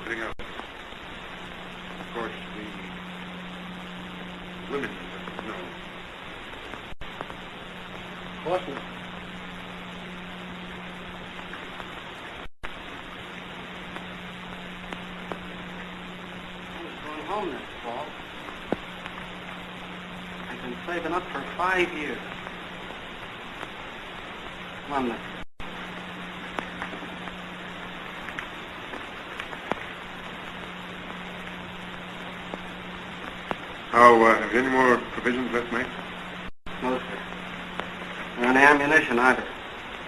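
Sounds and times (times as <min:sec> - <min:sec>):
clicks and crackles: 0:00.0 - 0:40.0
film soundtrack hiss and hum: 0:00.0 - 0:40.0
faint clicks: 0:26.0 - 0:33.9.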